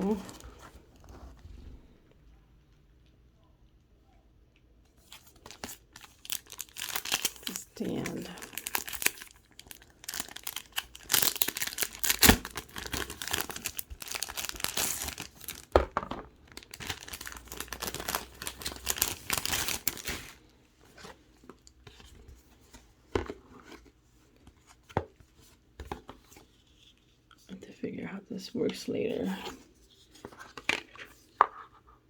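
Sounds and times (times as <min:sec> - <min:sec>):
packaging tearing and crinkling: 0:05.0 - 0:15.8, 0:16.5 - 0:20.4.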